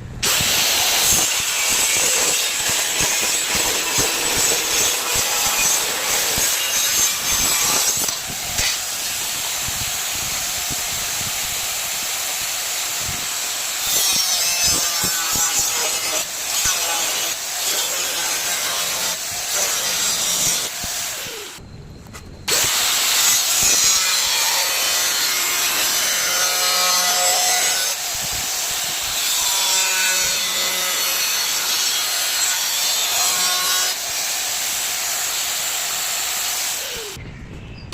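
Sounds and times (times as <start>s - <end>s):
power tool grinding metal: 0.2s - 21.6s, 22.5s - 37.2s.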